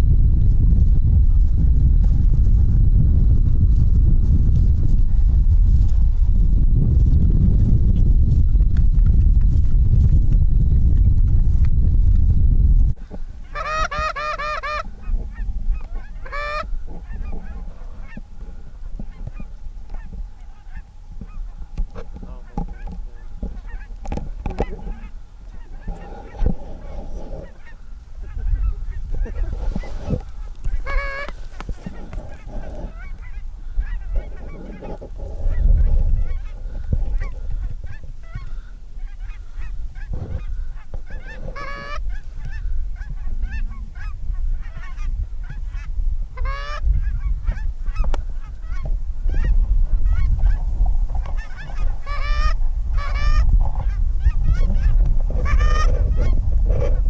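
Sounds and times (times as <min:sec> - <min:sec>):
low rumble: 0:00.0 - 0:13.1
geese honking: 0:13.4 - 0:57.0.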